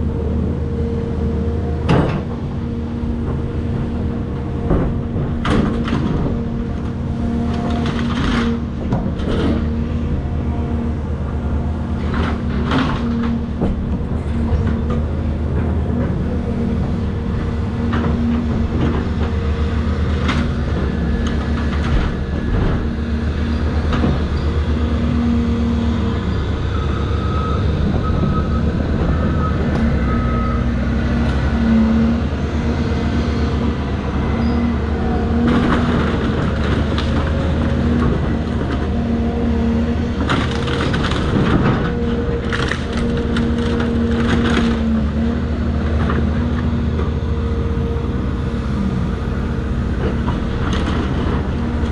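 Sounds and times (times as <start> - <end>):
excavator diesel engine running: 0.0 - 51.9
short beeps: 26.7 - 30.6.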